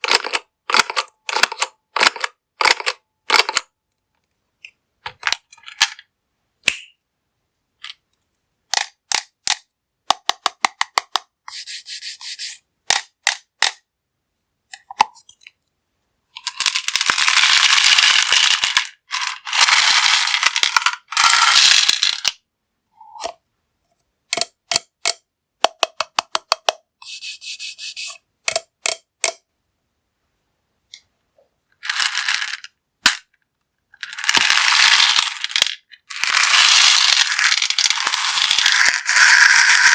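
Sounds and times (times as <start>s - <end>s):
candies rattling as poured: 16.4s - 22.4s, 31.8s - 32.7s, 34.0s - 39.9s
candies clicking into a container: 31.8s - 33.2s, 34.0s - 39.9s.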